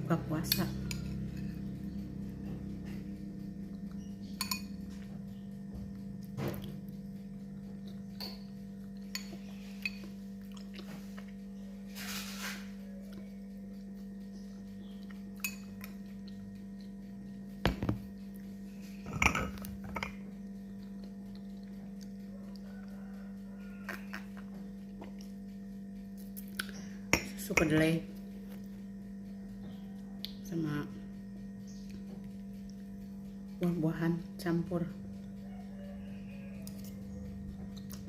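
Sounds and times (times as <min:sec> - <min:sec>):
low electrical hum: 0:00.0 - 0:38.0
dishes and cutlery clinking: 0:04.4 - 0:05.1, 0:19.0 - 0:20.2.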